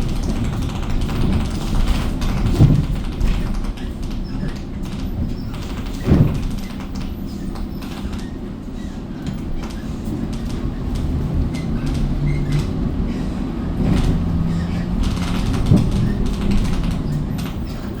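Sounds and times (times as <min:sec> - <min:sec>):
bus engine rumble: 0:00.0 - 0:18.0
rattles and clicks: 0:00.0 - 0:18.0.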